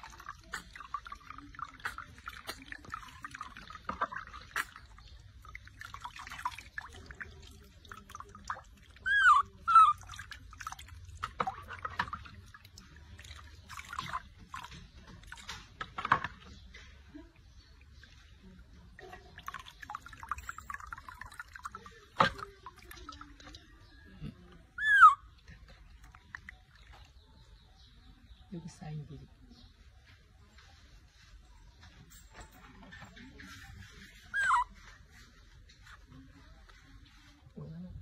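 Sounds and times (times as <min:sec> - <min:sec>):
water splashing and dripping: 0:00.0 - 0:28.2
monkey squealing: 0:09.0 - 0:10.2, 0:24.8 - 0:25.4, 0:34.3 - 0:34.8.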